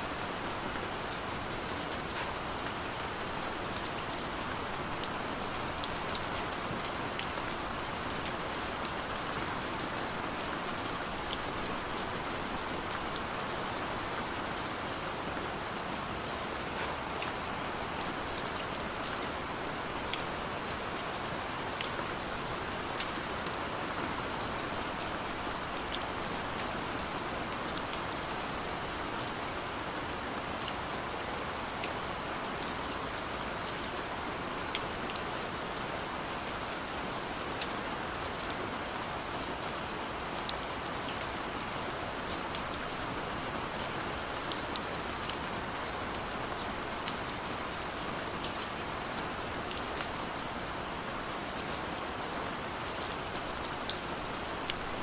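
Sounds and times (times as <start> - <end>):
gentle rain hiss: 0.0 - 55.0.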